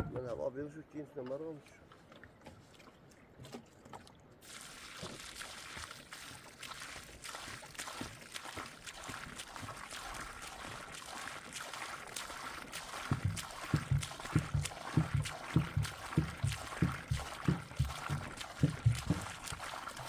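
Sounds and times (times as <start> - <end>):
dull low knocks: 0.0 - 0.4, 13.1 - 19.6
rain pattering: 12.8 - 20.0.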